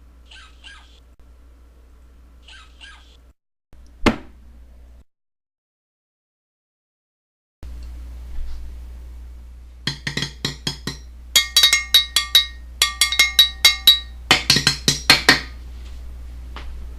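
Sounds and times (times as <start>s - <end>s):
steady low hum: 0.0s - 2.5s, 7.6s - 16.9s
sharp ringing taps: 9.9s - 15.4s.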